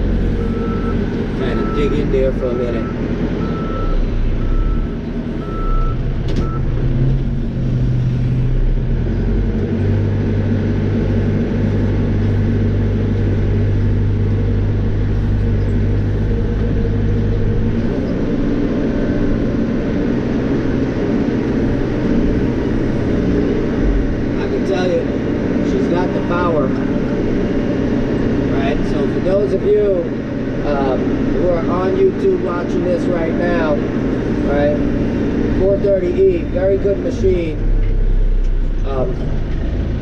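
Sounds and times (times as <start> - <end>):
diesel engine working under load: 0.0 - 40.0
reversing alarm beeping: 0.4 - 6.7.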